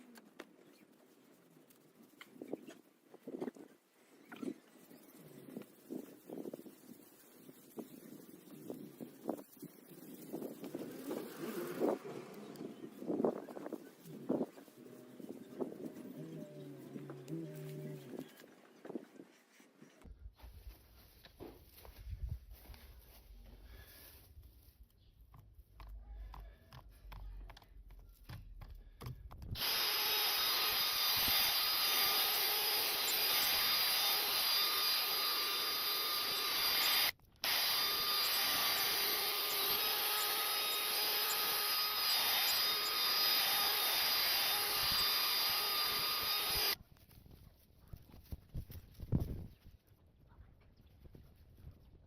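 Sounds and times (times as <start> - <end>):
power tool whining: 10.4 - 13.2, 29.6 - 46.8.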